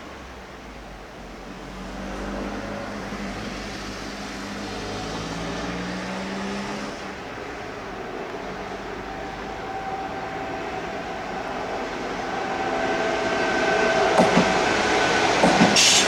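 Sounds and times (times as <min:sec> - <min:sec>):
train rolling rumble: 0:07.1 - 0:16.0.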